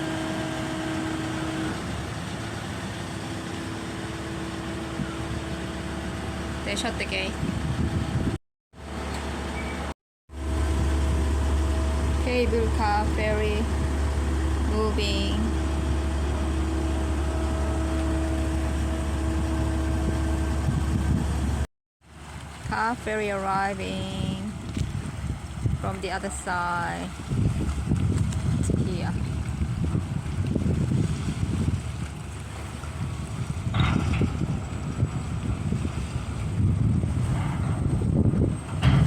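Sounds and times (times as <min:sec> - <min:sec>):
ferry engines idling: 0:00.0 - 0:08.2, 0:08.8 - 0:27.2.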